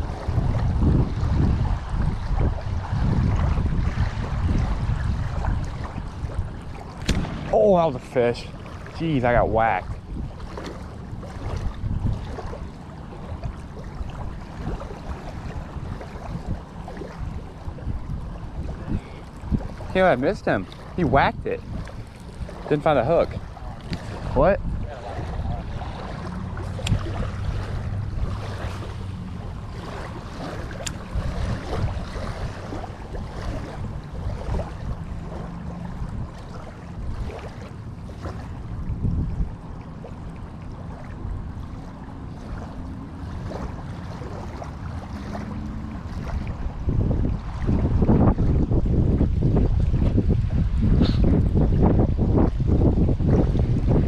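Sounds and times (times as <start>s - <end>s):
wind buffeting microphone: 0.0s - 54.0s.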